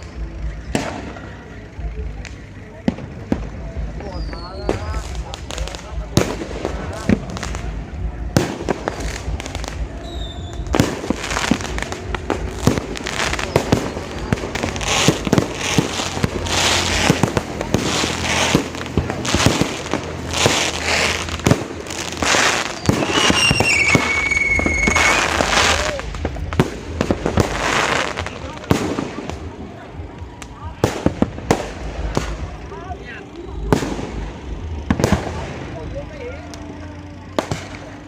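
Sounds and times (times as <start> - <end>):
fireworks bangs and crackles: 0.0 - 38.0
firework whistle: 3.4 - 29.4.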